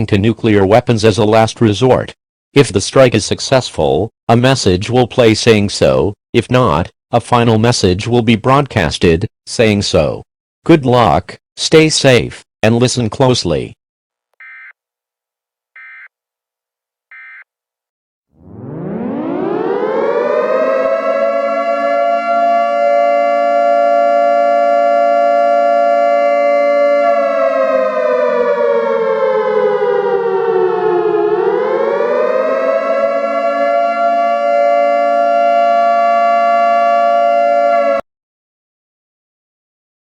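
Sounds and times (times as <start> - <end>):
civil defense siren: 18.3 - 38.1.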